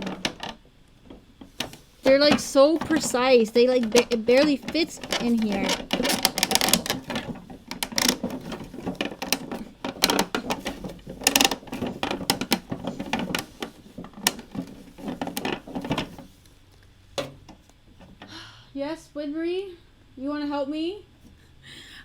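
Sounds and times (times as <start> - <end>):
plastic parts clicking together: 0.0 - 16.3.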